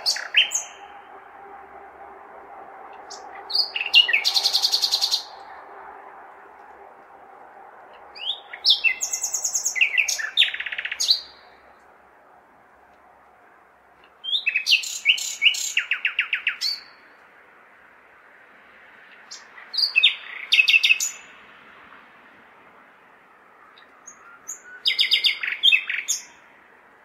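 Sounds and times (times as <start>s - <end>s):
nightingale singing: 0.0s - 1.1s, 2.9s - 5.8s, 7.9s - 11.9s, 14.0s - 17.1s, 19.1s - 21.4s, 23.4s - 26.5s
city background hum: 0.0s - 27.0s.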